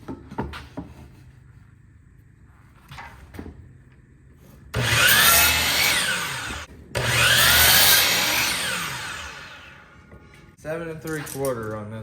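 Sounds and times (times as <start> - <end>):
electric saw cutting wood: 4.8 - 10.1.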